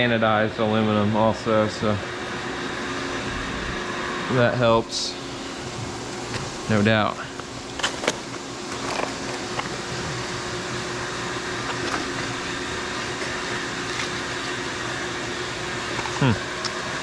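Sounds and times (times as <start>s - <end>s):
mill humming and whirring: 0.0s - 17.0s.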